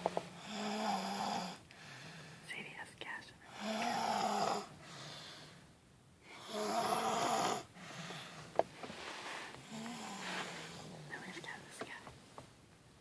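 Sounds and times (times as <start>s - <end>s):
soft breaths: 0.0s - 6.8s, 7.6s - 12.5s
person snoring: 0.4s - 1.6s, 3.5s - 4.7s, 6.3s - 7.7s, 9.6s - 11.0s.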